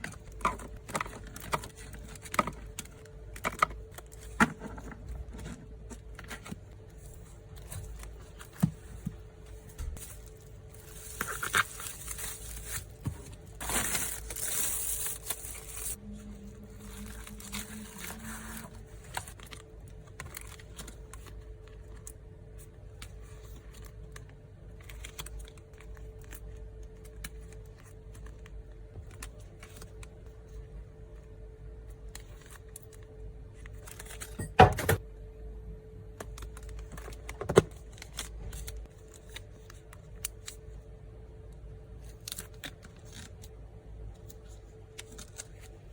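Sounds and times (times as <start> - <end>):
plastic wrapping crinkling: 10.0 - 21.8.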